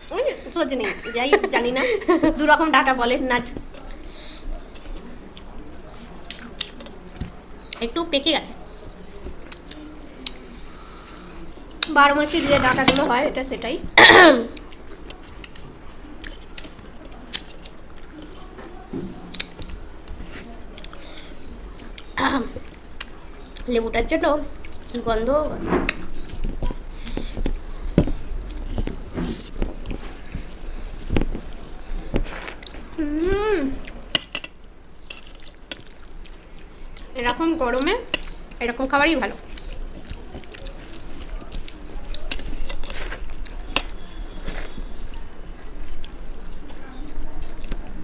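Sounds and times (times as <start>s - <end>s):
person chewing and eating: 13.8s - 23.8s, 24.4s - 48.0s
person humming: 33.0s - 33.8s
dishes clicking and clinking: 33.8s - 36.0s.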